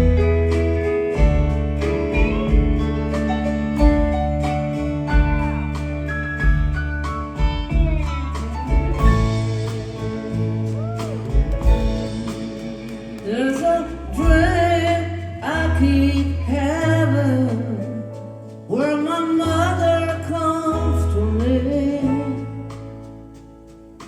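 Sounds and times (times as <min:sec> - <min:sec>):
live rock band playing: 0:00.0 - 0:16.5
person singing: 0:09.2 - 0:18.0.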